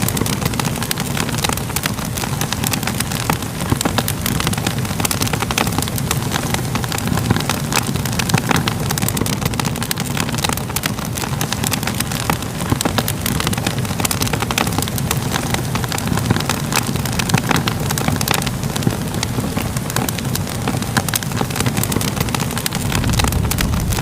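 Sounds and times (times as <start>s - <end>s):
fire popping and crackling: 0.0s - 24.0s
low rumble of flames: 0.0s - 24.0s.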